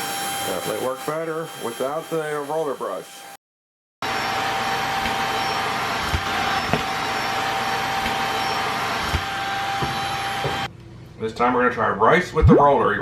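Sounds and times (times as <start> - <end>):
vacuum cleaner motor whine: 0.0 - 3.4, 4.0 - 10.7.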